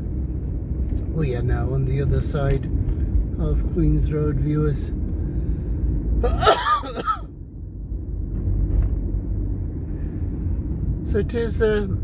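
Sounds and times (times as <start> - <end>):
car engine and tyres rumbling: 0.0 - 12.0.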